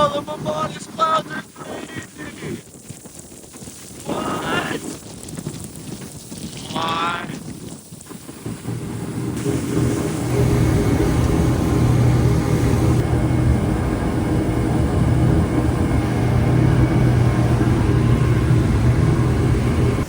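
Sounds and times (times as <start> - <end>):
boat engines droning: 0.0 - 1.4, 8.6 - 20.0.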